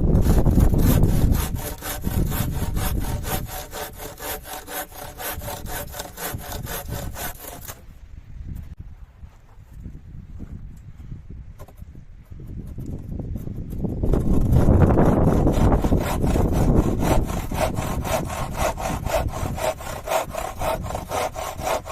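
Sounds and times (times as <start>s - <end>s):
hand saw cutting wood: 0.0s - 7.9s, 12.6s - 21.9s
wind buffeting microphone: 0.0s - 21.9s.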